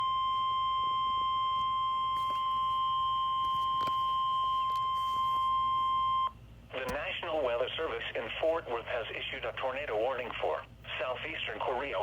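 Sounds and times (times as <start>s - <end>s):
steady high alarm beep: 0.0s - 6.4s
radio static: 6.7s - 12.0s.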